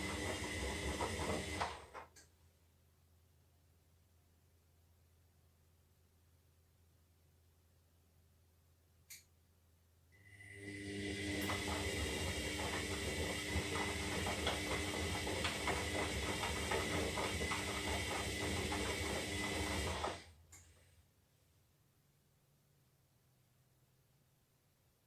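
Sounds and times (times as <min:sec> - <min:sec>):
washing machine drum whine: 0:00.0 - 0:02.0, 0:10.4 - 0:20.3
tumbling load rattling and clicking: 0:11.4 - 0:20.2.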